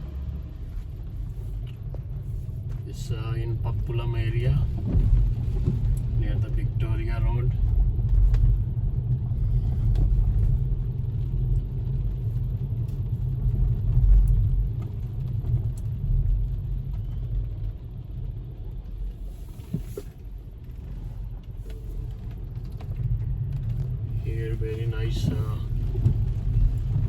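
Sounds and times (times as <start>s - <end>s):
car engine and tyre rumble: 0.0s - 27.0s.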